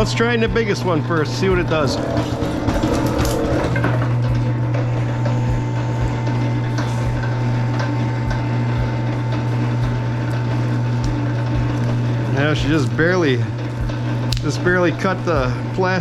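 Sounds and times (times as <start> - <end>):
wire-stripping machine humming: 0.0 - 16.0.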